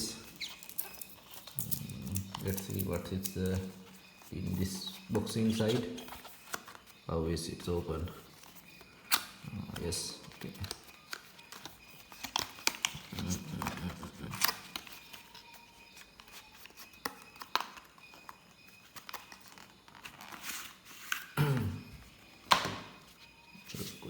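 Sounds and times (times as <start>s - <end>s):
paper rustling: 0.0s - 7.0s, 8.1s - 21.3s.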